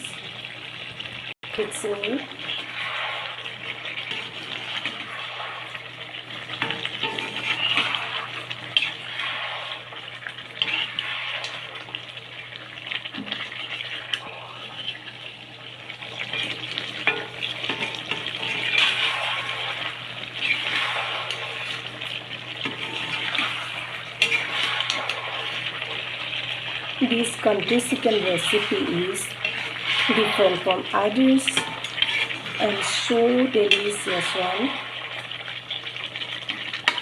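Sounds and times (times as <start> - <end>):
chicken sizzling in hot oil: 0.0 - 37.0
spoon scraping a pan: 2.4 - 10.0, 10.6 - 12.0, 16.2 - 34.8.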